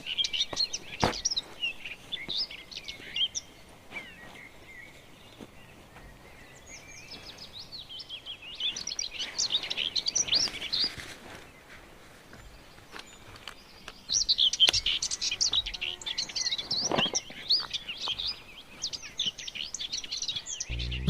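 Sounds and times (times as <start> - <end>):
birds chirping: 15.7 - 21.0.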